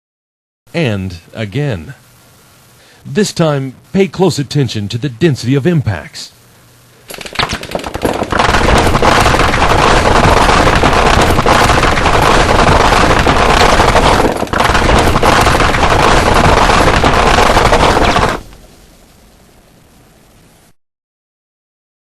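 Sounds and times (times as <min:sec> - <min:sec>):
machine-gun fire: 0:07.1 - 0:18.6.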